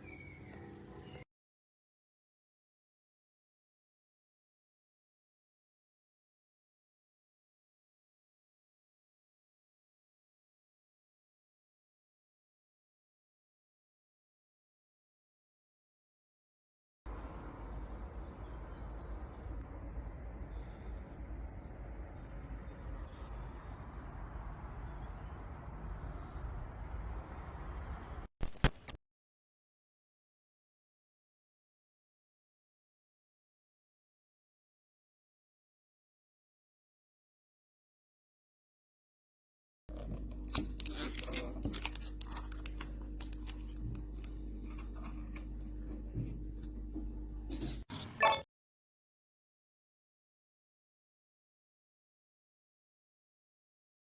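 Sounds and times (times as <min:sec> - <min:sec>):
faint bird chirps: 0:00.0 - 0:01.3
scratching and clicking handling noise: 0:39.9 - 0:48.2
low electrical hum: 0:39.9 - 0:48.4.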